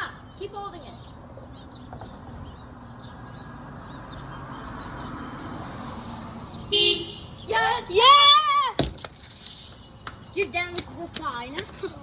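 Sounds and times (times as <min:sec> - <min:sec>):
passing car road noise: 0:01.8 - 0:10.0
car horn honk: 0:06.7 - 0:07.8.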